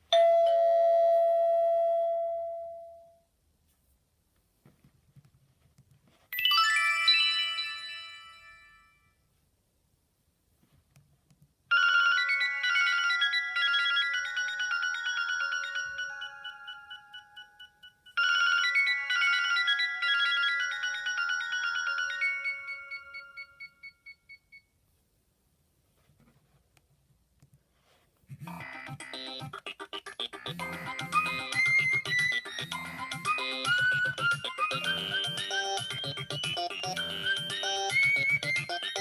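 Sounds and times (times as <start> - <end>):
mobile phone ringtone melody: 6.4 - 9.2, 11.7 - 24.7, 28.5 - 29.6, 30.2 - 39.0.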